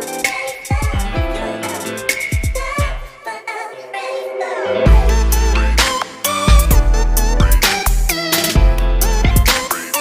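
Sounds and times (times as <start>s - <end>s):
electronic hip-hop music: 0.0s - 10.0s
deep falling bass hits: 4.9s - 5.9s.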